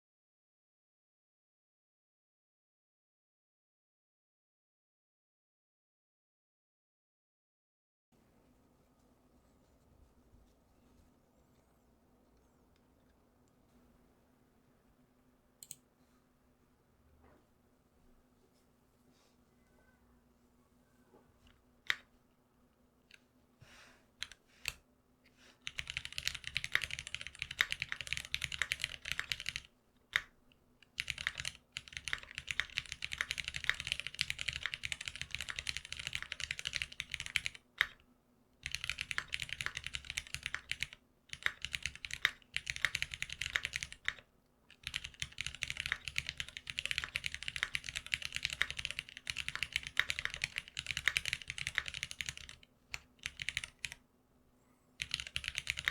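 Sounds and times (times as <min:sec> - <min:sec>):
mechanical keyboard typing: 0:24.2 - 0:24.8, 0:25.6 - 0:38.0, 0:38.6 - 0:54.0, 0:55.0 - 0:55.9.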